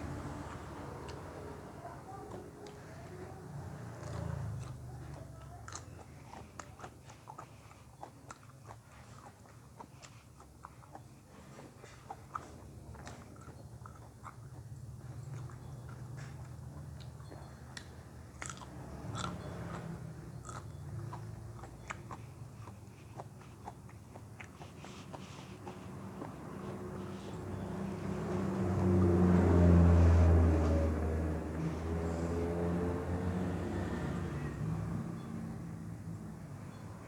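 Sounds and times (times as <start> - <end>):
person chewing crunchy food: 3.9 - 29.8.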